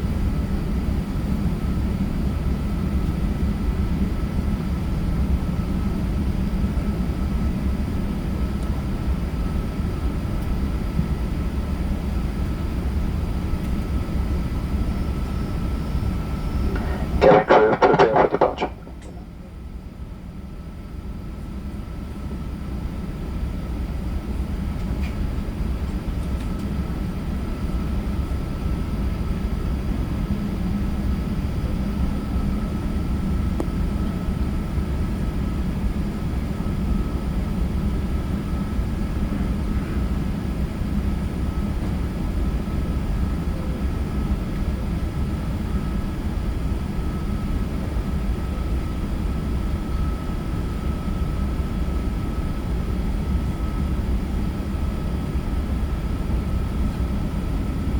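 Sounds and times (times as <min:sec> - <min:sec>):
aircraft engine drone in cabin: 0:00.0 - 0:57.9
thin steady whine: 0:14.8 - 0:19.5.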